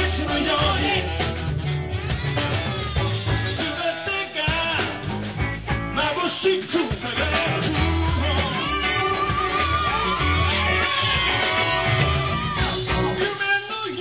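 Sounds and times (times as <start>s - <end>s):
live band playing upbeat song: 0.0s - 14.0s
alto saxophone: 0.8s - 3.7s.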